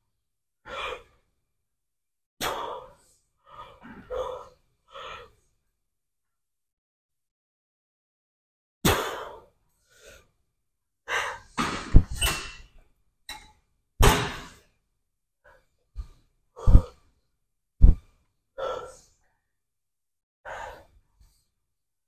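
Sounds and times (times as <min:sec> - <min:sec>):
man breathing hard: 0:11.0 - 0:12.2, 0:15.5 - 0:17.1, 0:17.8 - 0:19.2, 0:20.4 - 0:21.5
breath thuds on microphone: 0:11.6 - 0:12.2, 0:16.0 - 0:17.0, 0:17.8 - 0:18.1.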